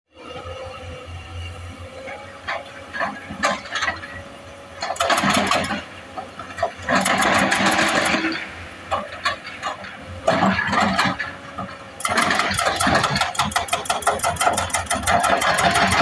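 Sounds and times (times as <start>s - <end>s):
excavator engine running: 0.2s - 16.0s
hydraulic breaker hammering: 4.8s - 16.0s.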